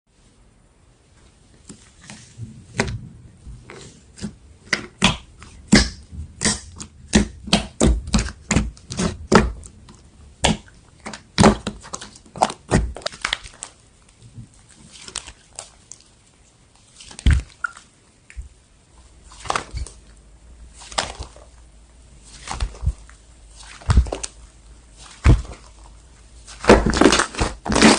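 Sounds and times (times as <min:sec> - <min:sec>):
slime clicking and popping: 0:04.7 - 0:09.7.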